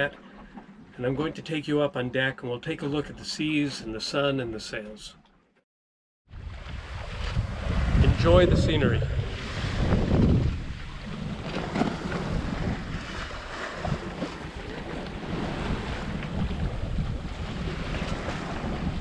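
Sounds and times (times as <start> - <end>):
wind buffeting microphone: 6.3 - 19.0
waves rushing: 6.4 - 19.0.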